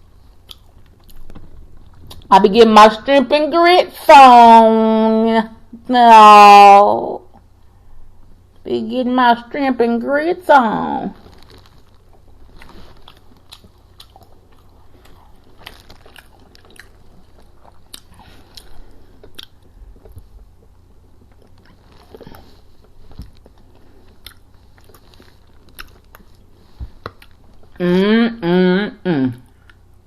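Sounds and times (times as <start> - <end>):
chewing fried food: 0.2 - 2.3, 11.2 - 27.8.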